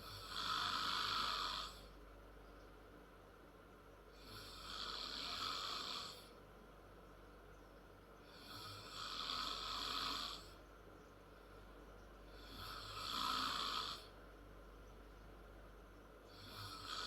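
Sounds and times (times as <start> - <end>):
girl snoring loudly: 0.0 - 1.8, 4.2 - 6.2, 8.4 - 10.5, 12.4 - 14.1, 16.4 - 17.0
quiet breathing: 0.0 - 2.0, 4.0 - 6.5, 8.1 - 15.0, 16.1 - 17.0.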